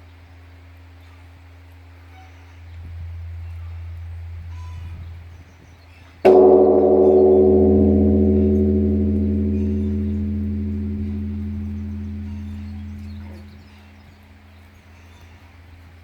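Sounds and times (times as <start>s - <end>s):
temple bell ringing: 6.3s - 14.3s.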